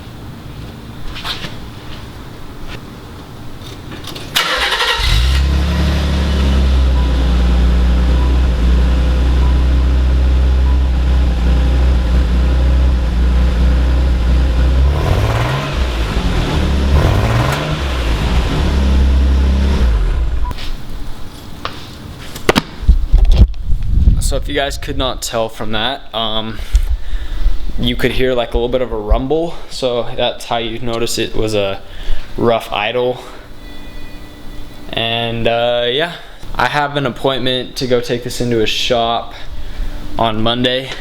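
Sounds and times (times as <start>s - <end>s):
engine idling roughly: 6.8s - 20.5s.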